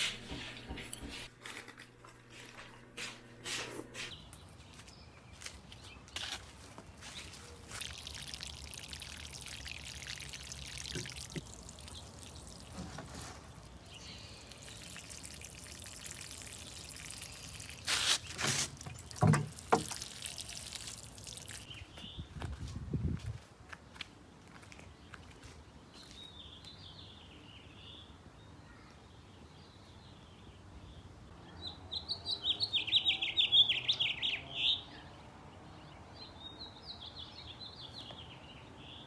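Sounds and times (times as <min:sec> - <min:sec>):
water pouring and trickling: 0:07.0 - 0:21.9.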